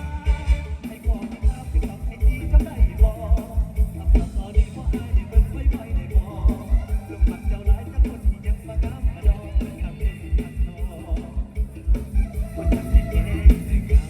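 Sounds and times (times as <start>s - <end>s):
instrumental band music: 0.0s - 14.0s.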